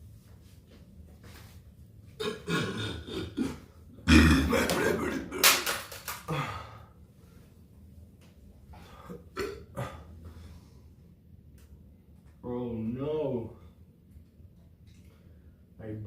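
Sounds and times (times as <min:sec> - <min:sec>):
person burping: 0:02.2 - 0:05.7, 0:09.2 - 0:10.0.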